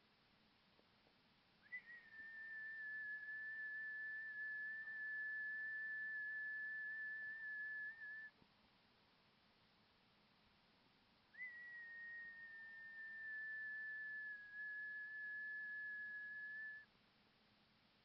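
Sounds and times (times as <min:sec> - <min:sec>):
high whistle-like tone: 0:01.6 - 0:08.4, 0:11.4 - 0:16.9.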